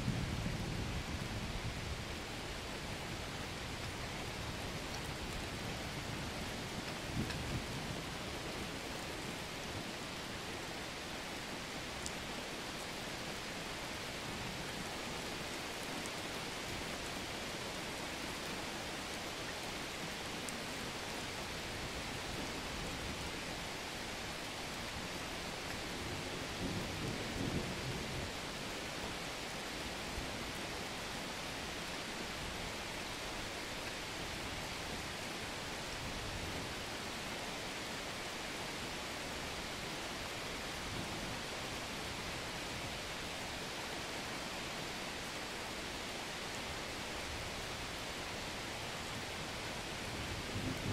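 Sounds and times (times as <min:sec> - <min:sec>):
steady outdoor hiss: 0:00.0 - 0:50.9.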